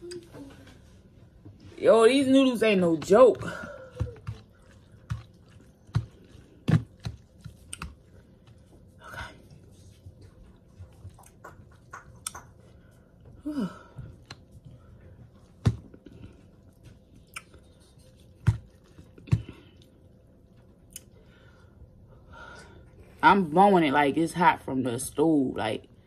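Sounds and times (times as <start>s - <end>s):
person chewing noodles: 3.4s - 21.3s.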